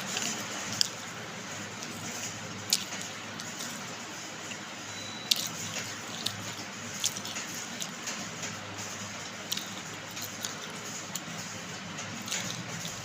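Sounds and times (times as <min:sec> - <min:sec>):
clay pot pieces crunching: 0:05.3 - 0:08.0, 0:12.1 - 0:13.0.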